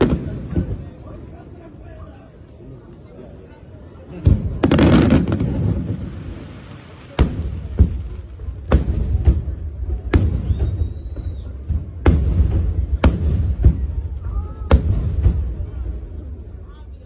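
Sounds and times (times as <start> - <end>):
dense crackling burst: 4.4 - 16.7.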